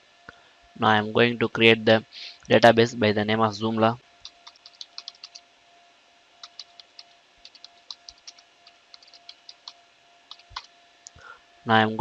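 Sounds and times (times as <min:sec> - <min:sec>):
faint steady hum: 0:00.0 - 0:12.0
computer keyboard typing: 0:04.2 - 0:05.4, 0:06.4 - 0:10.7.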